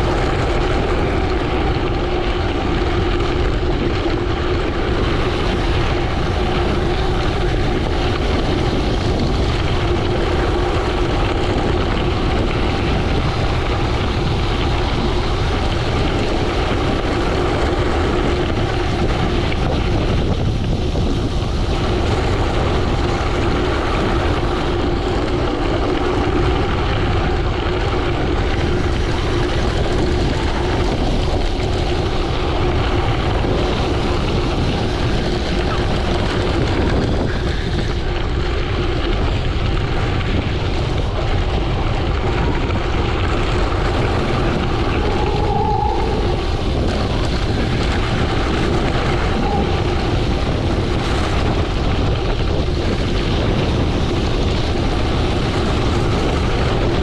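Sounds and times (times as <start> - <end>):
low rumble: 0.0 - 57.0
wind buffeting microphone: 0.0 - 57.0
steady hum: 38.0 - 57.0.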